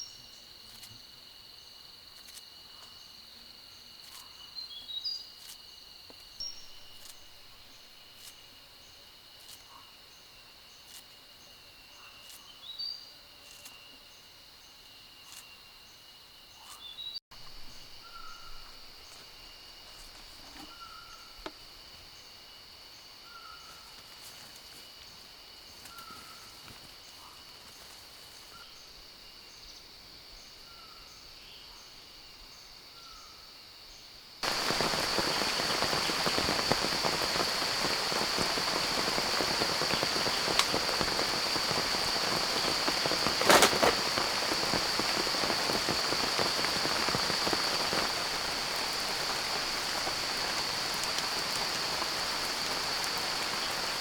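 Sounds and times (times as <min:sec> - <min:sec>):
high insect drone: 0:00.0 - 0:54.0
sharp crack: 0:34.4 - 0:48.0
heavy rain falling: 0:34.4 - 0:54.0.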